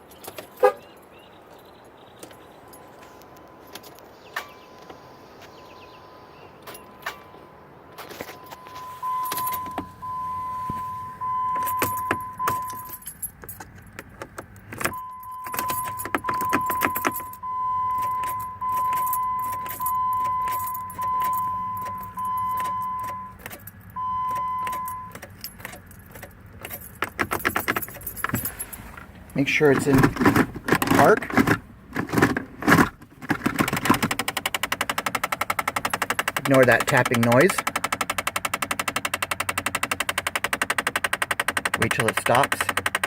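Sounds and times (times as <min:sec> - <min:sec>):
keys jingling in ignition: 0:00.0 - 0:04.6, 0:06.6 - 0:42.8
dashboard warning chime: 0:04.4 - 0:13.3, 0:14.9 - 0:25.2, 0:27.8 - 0:31.2.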